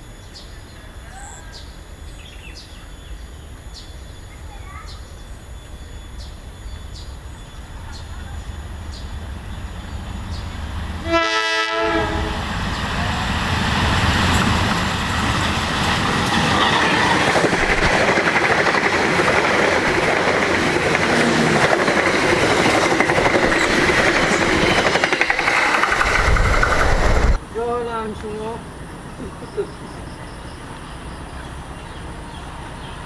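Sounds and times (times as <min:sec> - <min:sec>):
locomotive horn blast: 0:11.0 - 0:13.2
train wheels clattering over rails: 0:12.5 - 0:27.4.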